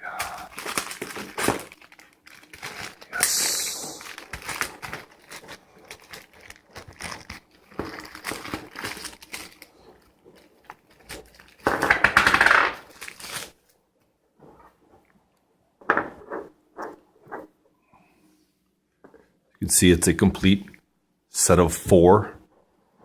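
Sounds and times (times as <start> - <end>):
packaging rustling: 0.1 - 13.7.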